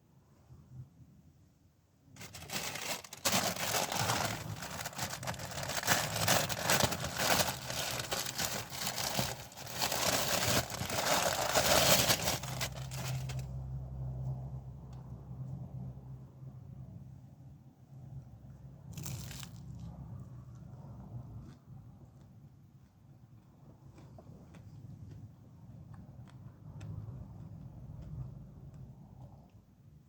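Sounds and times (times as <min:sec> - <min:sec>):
wrapping crinkling: 0:02.2 - 0:13.4, 0:19.0 - 0:19.6.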